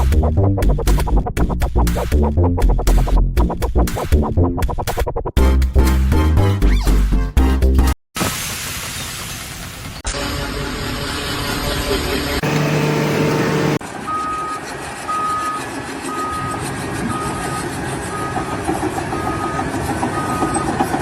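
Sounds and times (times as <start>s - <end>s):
engine and machinery noise: 8.2s - 21.0s
steady humming tone: 12.4s - 13.8s
reversing alarm beeping: 12.4s - 20.9s.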